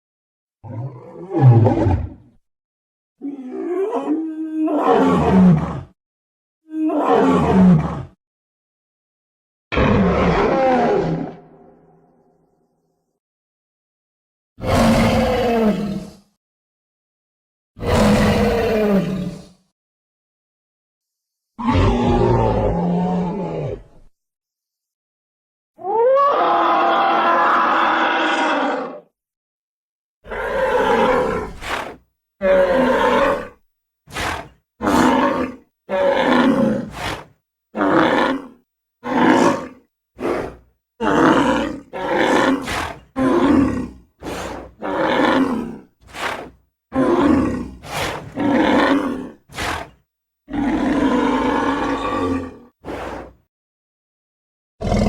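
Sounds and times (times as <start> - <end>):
dinosaur roars and growls: 0.6 - 2.4, 3.2 - 6.0, 6.7 - 8.2, 9.7 - 12.2, 14.6 - 16.3, 17.8 - 19.6, 21.6 - 24.1, 25.8 - 29.1, 30.3 - 53.5, 54.8 - 55.0.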